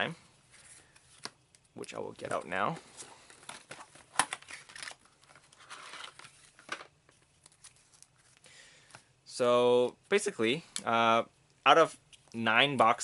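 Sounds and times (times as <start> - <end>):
packaging rustling and crinkling: 2.2 - 8.4.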